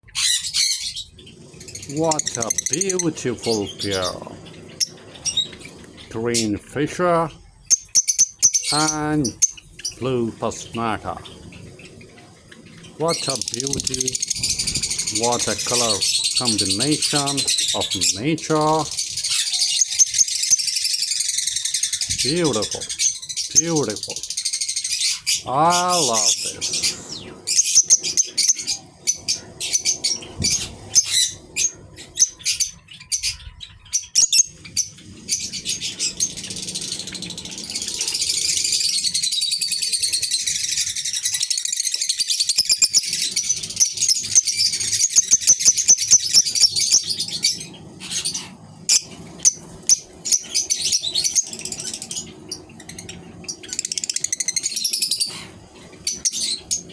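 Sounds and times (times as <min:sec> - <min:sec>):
lovebirds chirping: 0:00.0 - 0:56.9.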